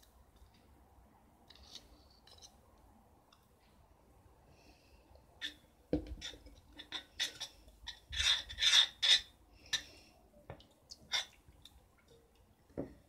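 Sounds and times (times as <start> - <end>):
utensil scraping in container: 6.2 - 9.3.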